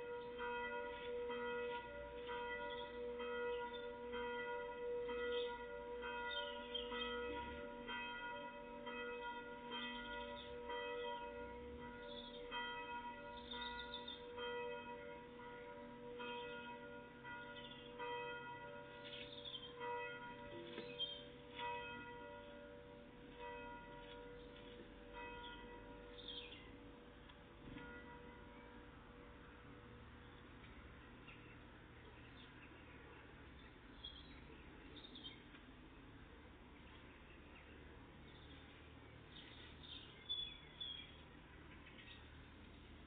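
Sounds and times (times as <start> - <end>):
bells ringing: 0.0 - 29.6.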